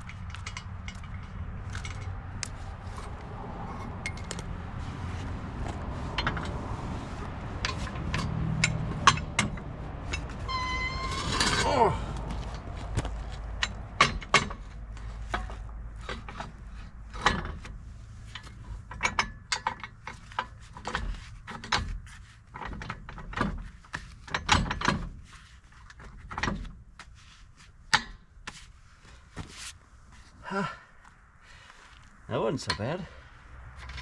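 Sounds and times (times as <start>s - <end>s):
metal parts knocking and clanking: 0.0s - 2.2s, 7.6s - 11.9s, 12.9s - 17.7s, 18.3s - 25.2s, 33.8s - 34.0s
low steady rumble: 0.0s - 24.2s.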